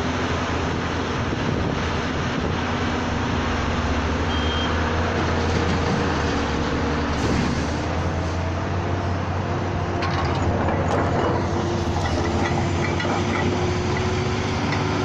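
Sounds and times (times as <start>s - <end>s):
excavator diesel engine humming: 0.0s - 15.0s
high beep: 4.3s - 4.7s.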